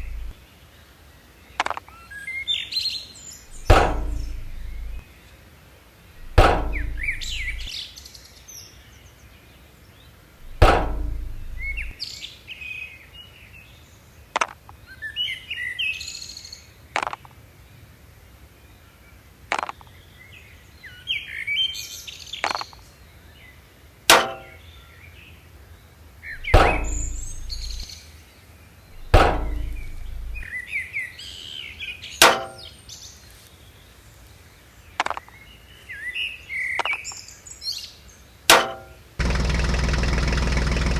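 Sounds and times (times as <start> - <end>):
dull low thump: 0.0 - 0.4, 3.5 - 5.0, 6.2 - 7.7, 10.4 - 12.0, 26.4 - 27.9, 28.9 - 30.5
sharp clicks or knocks: 0.0 - 0.4, 3.5 - 5.0, 6.2 - 7.7, 10.4 - 12.0, 24.1 - 24.6, 26.4 - 27.9, 28.9 - 30.5, 32.2 - 32.7, 38.5 - 39.0.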